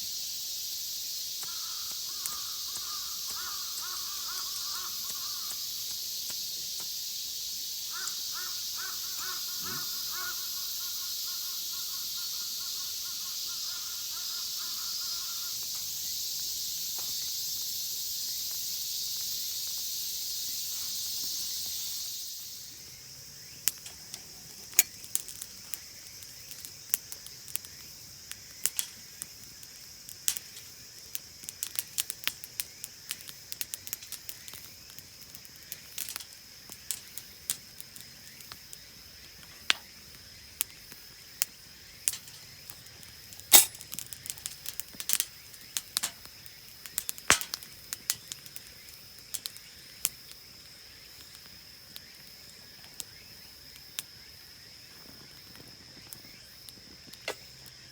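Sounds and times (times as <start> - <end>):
insects chirring: 0.0 - 57.9
sharp crackles and clicks: 1.4 - 6.9, 23.6 - 39.9, 40.6 - 50.2.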